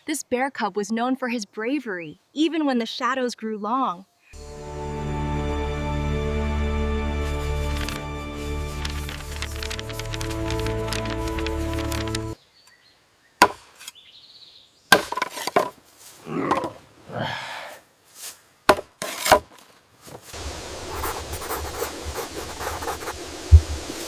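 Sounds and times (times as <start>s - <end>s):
steady hiss: 20.2s - 24.0s.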